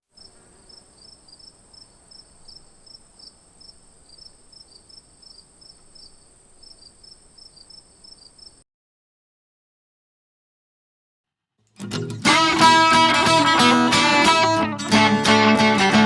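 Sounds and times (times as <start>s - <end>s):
high-pitched insect buzz: 0.2s - 8.6s
short insect chirp: 0.2s - 8.6s.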